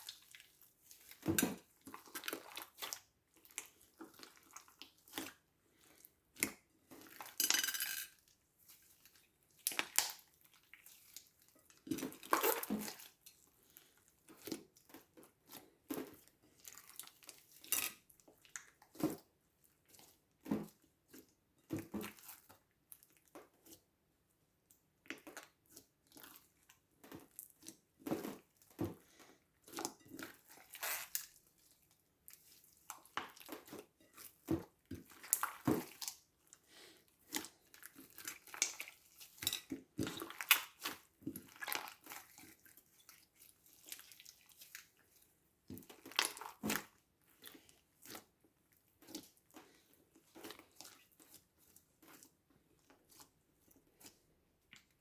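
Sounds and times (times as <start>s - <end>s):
slime squelching and popping: 0.0s - 7.4s, 8.5s - 23.8s, 24.7s - 55.0s.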